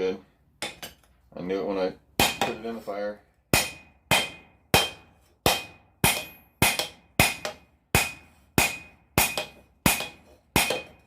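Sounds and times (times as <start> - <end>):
hammer striking steel on anvil: 0.6 - 1.0, 2.2 - 2.8, 3.5 - 11.0.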